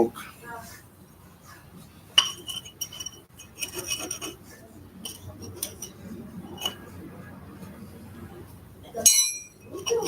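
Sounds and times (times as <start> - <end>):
metal tools clinking: 2.2 - 4.4, 9.0 - 10.0.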